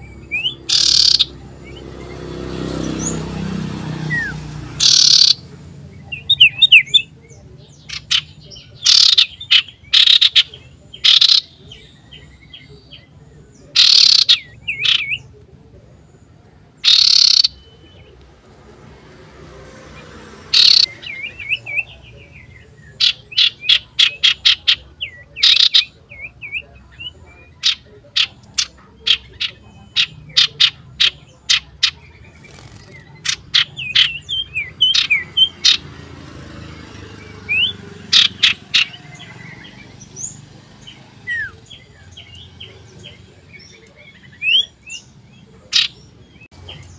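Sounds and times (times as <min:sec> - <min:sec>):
bird calling loudly: 0:00.0 - 0:02.0, 0:04.0 - 0:05.5, 0:07.8 - 0:12.5, 0:13.7 - 0:15.4, 0:16.8 - 0:18.1, 0:20.4 - 0:22.0, 0:22.9 - 0:46.9
quiet twisting bird chirps: 0:00.0 - 0:03.2, 0:04.0 - 0:18.6, 0:19.9 - 0:46.9.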